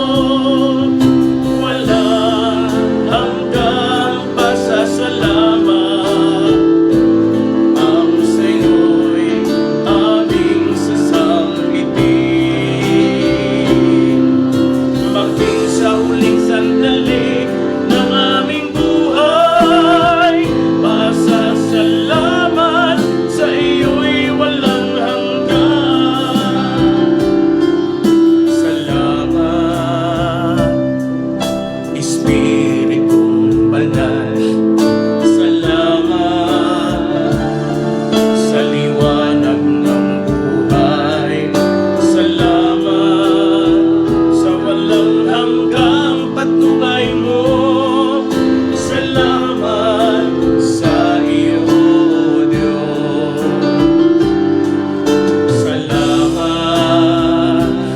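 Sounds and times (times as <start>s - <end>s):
instrumental accompaniment: 0.0s - 57.9s
person singing gospel song: 0.0s - 57.9s.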